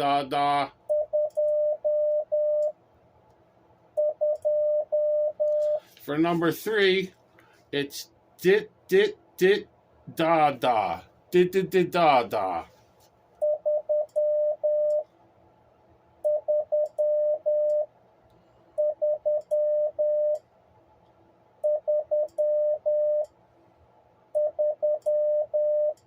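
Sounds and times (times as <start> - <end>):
morse code beeps: 0.9 - 2.7, 4.0 - 5.8, 13.4 - 15.0, 16.3 - 17.9, 18.8 - 20.4, 21.6 - 23.2, 24.4 - 26.0.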